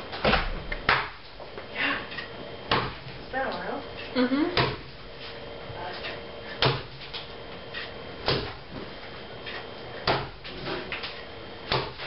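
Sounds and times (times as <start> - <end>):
axe chopping wood: 2.7 - 3.0, 6.6 - 6.9, 8.2 - 8.6, 10.0 - 10.4, 11.7 - 12.0.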